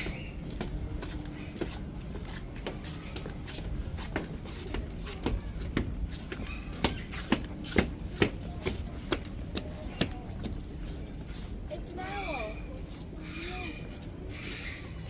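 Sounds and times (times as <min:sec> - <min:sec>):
clicking footsteps: 0:00.0 - 0:12.0.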